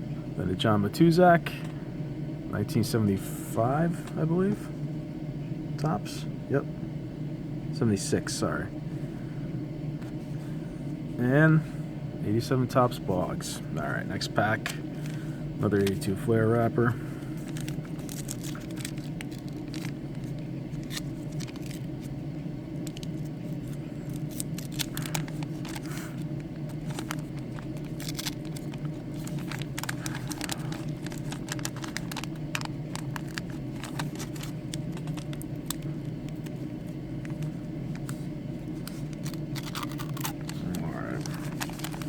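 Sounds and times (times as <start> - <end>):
steady low hum: 0.0 - 42.0
paper wrapper crinkling and tearing: 17.4 - 22.2, 22.8 - 36.6, 37.2 - 42.0.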